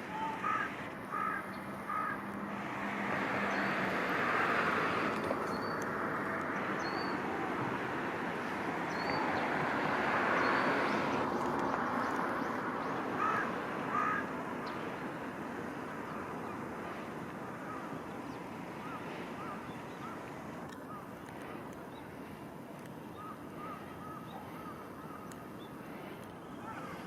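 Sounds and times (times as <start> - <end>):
loud bird calls: 0.1 - 2.2, 12.9 - 14.9, 23.2 - 27.0.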